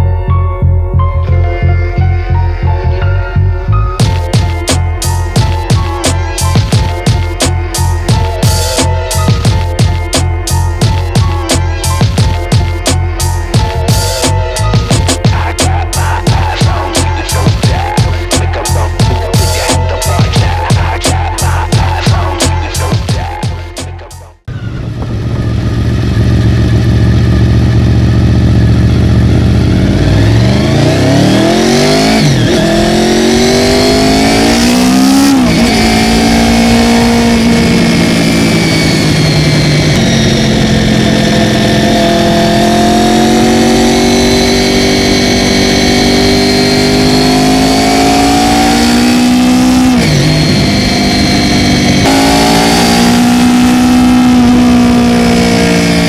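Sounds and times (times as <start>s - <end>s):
motorcycle engine revving: 13.6s - 23.6s, 24.4s - 56.0s.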